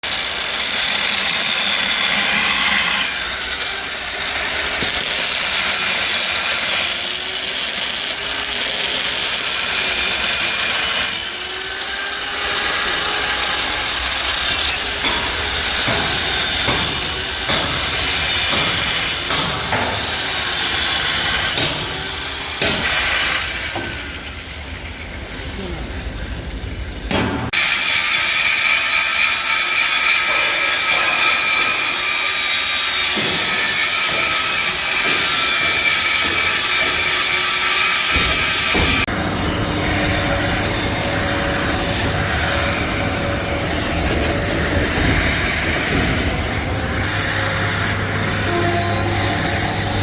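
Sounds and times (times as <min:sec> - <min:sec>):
power tool working on metal: 0:00.0 - 0:26.4, 0:27.5 - 0:50.0
knocks: 0:15.0 - 0:20.2.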